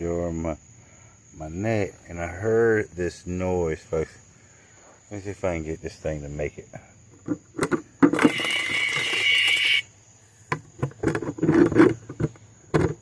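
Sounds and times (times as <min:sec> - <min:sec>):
cicada buzzing distress call: 0:00.0 - 0:10.8
clicks and rustling of handling: 0:10.5 - 0:13.0.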